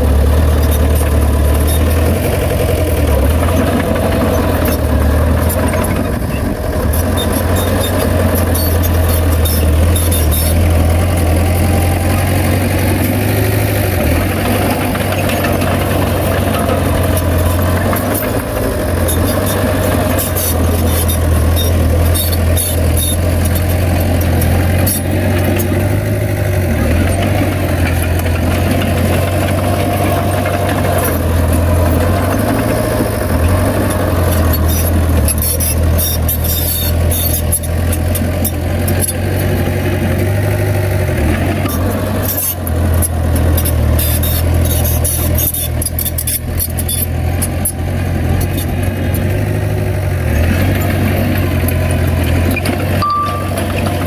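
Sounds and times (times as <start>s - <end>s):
bulldozer diesel engine running: 0.0s - 54.0s
sharp metallic clicks and clanks: 0.5s - 26.1s, 50.6s - 54.0s.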